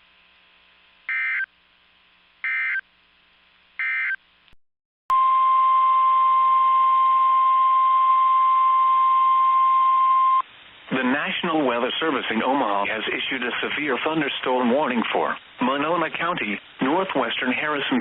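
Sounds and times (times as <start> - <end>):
steady high alarm tone: 1.1 - 1.5, 2.4 - 2.8.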